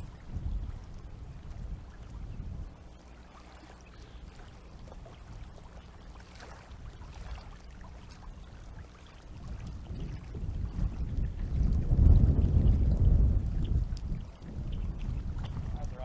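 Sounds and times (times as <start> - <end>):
water trickling and splashing: 0.0 - 16.0
wind rumble on microphone: 0.0 - 16.0.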